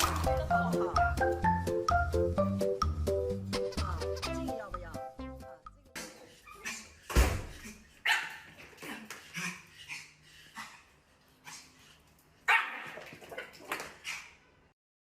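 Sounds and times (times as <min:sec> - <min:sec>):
dog barking: 0:08.0 - 0:08.5, 0:12.5 - 0:13.0.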